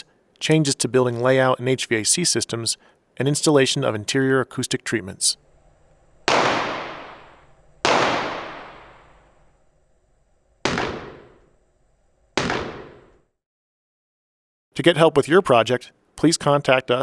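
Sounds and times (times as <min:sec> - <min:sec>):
gunshots with reverberant tail: 0:06.2 - 0:09.5, 0:10.6 - 0:11.5, 0:12.4 - 0:13.3.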